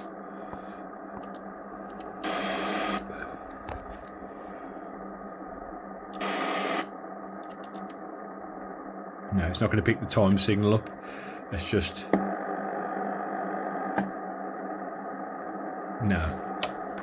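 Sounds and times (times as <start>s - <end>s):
loud static bursts: 0.0s - 8.8s
radio receiver hiss: 0.0s - 17.0s.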